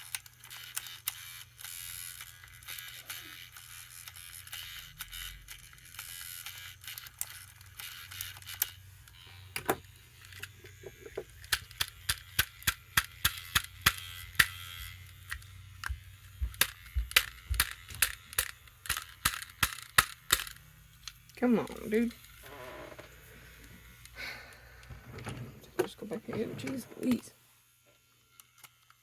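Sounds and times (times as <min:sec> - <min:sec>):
toy motor gearbox clicking: 0:00.0 - 0:27.3, 0:28.0 - 0:29.0.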